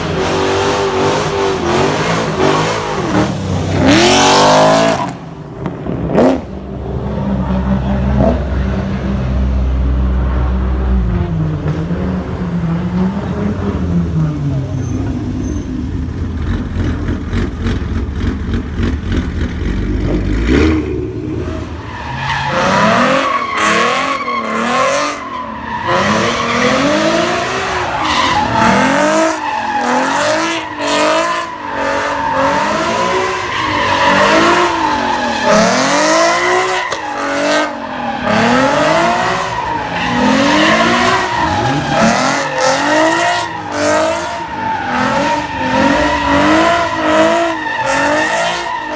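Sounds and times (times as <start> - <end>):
car engine revving: 0.0 - 9.4, 16.0 - 48.9
tires squealing: 11.7 - 48.9.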